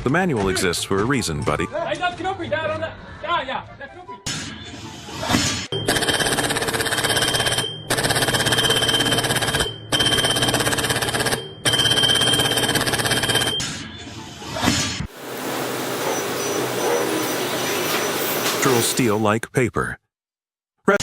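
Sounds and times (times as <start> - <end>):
power tool high whine: 15.1 - 19.2.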